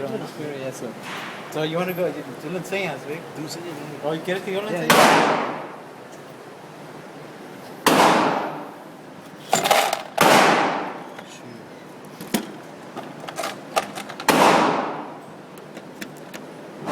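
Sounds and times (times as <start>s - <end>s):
pistol shots echoing: 7.9s - 8.6s, 10.2s - 11.0s, 14.3s - 15.2s
sharp clicks and knocks: 12.1s - 14.5s, 15.5s - 16.5s.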